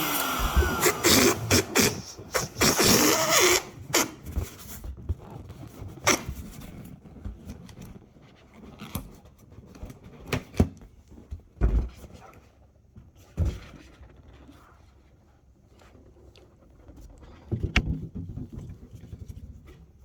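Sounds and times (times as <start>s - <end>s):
rubber balloon squeaking: 0.0s - 4.5s, 6.0s - 6.5s.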